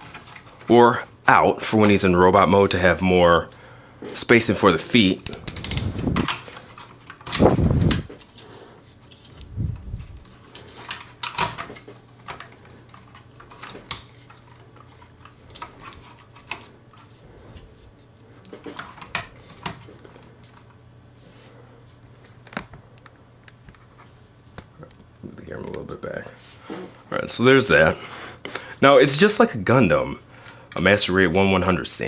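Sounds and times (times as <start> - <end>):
faint steady hum: 0.0 - 32.0
plastic parts clicking and tapping: 10.5 - 17.1.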